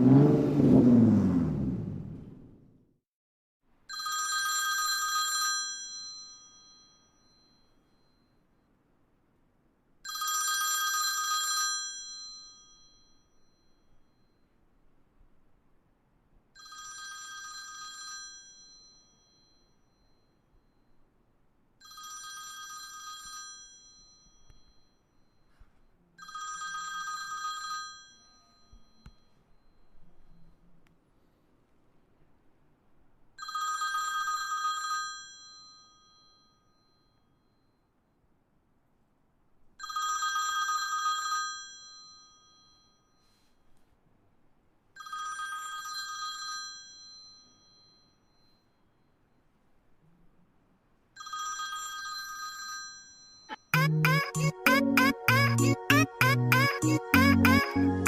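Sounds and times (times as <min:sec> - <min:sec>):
telephone ringing: 0:03.9 - 0:06.1.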